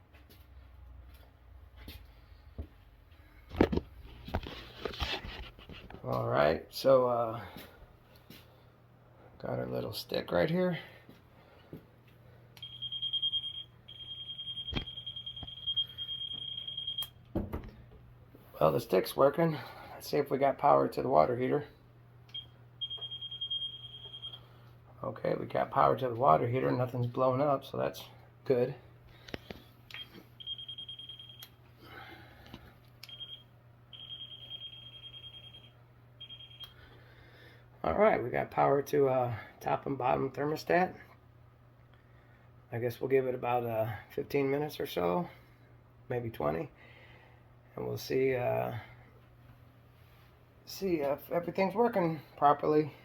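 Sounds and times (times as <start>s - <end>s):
voltage tester beeping: 12.6s - 17.2s, 22.3s - 24.4s, 30.0s - 31.6s, 33.0s - 36.8s.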